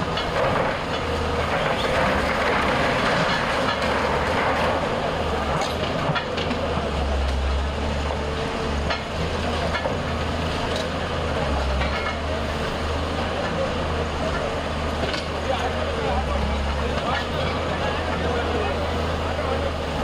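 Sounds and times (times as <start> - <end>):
diesel engine rumbling: 0.0 - 20.0
knocks and clatter: 0.1 - 4.8.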